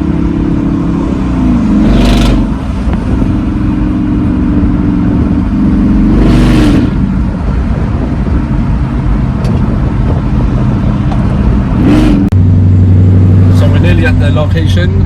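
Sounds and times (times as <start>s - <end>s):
car engine running: 0.0s - 15.0s.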